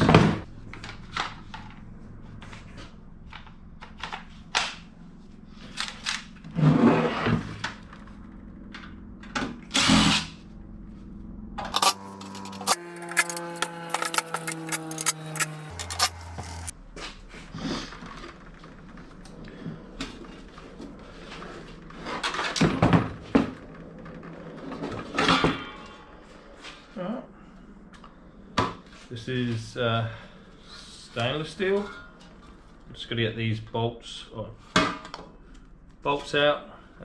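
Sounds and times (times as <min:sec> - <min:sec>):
power drill running: 0:09.7 - 0:10.3, 0:11.7 - 0:16.7
metal parts knocking and clanking: 0:11.6 - 0:16.7.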